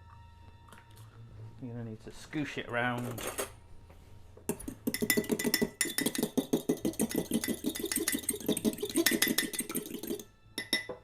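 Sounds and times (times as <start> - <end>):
utensil clinking against cup: 4.5 - 11.0.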